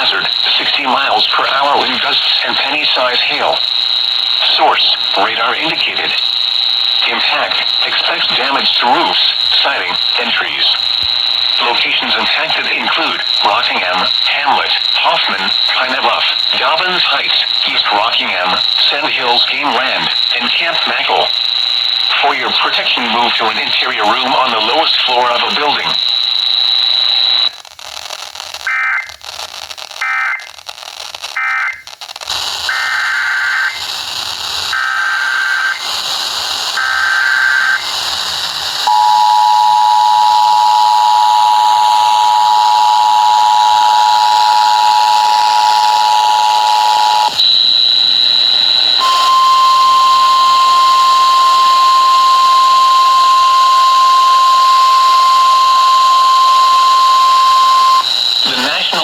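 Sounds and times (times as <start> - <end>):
steady warning tone: 0.0 - 27.6, 36.7 - 59.0
raspy digital data bursts: 0.0 - 59.0
high beep: 38.9 - 59.0
two-tone attention signal: 38.9 - 59.0.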